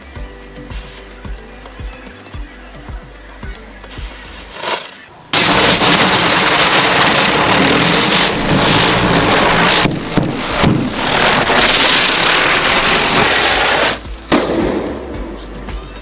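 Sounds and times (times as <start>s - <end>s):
firecrackers crackling: 3.9s - 16.0s.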